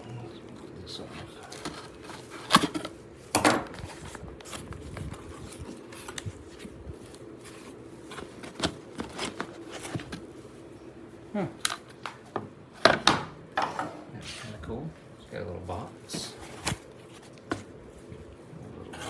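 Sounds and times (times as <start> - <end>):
packaging clicks and scrapes: 1.2 - 10.3.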